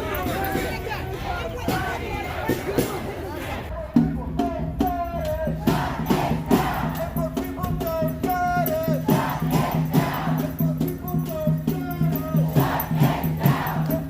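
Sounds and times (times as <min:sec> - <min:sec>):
percussion hits: 0:04.0 - 0:14.0.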